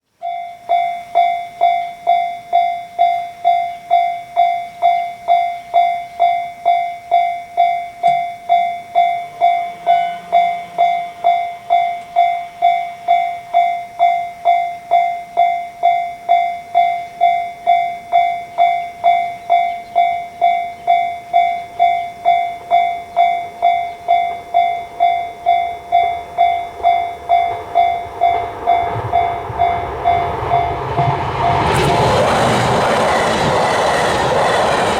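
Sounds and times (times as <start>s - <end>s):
level crossing alarm ringing: 0.1s - 34.9s
train rumble: 20.7s - 34.9s.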